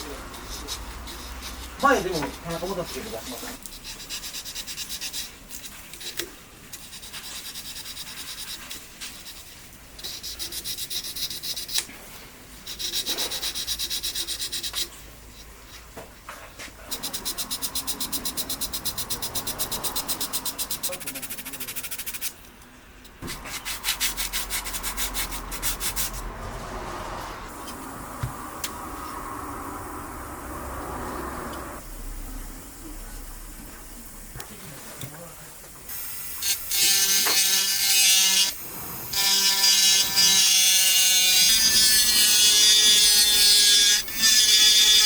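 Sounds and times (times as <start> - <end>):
hand sanding plastic: 0.0 - 11.9, 16.9 - 22.4.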